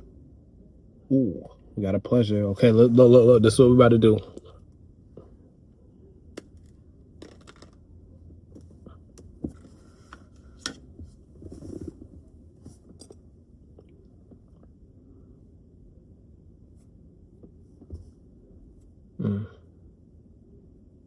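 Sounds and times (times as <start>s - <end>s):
soft rustling: 8.3s - 13.3s.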